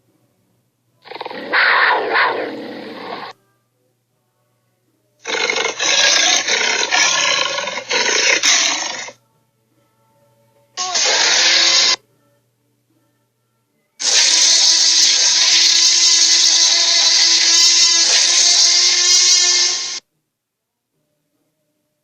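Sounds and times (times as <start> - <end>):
cartoon dinosaur roaring screech: 1.1 - 3.3, 5.2 - 9.2, 10.8 - 12.0, 14.0 - 20.0.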